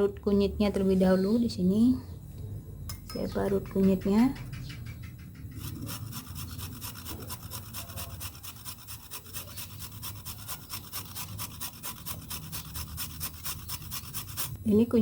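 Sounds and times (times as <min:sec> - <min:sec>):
root scraping on grater: 0:05.5 - 0:14.6.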